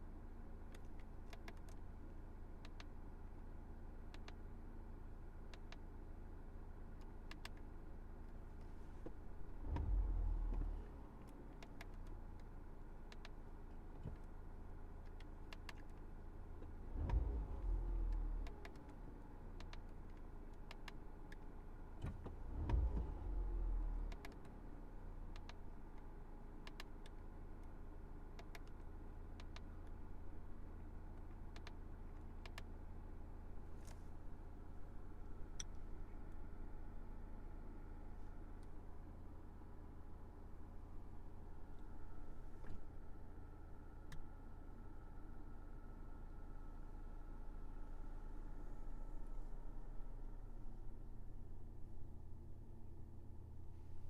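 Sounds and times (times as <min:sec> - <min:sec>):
car engine idling and revving: 0:00.0 - 0:54.0.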